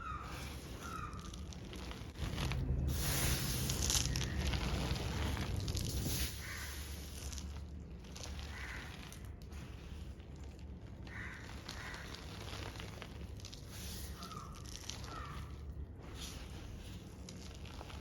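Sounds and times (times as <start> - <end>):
chalk powder crackling: 0.0 - 18.0.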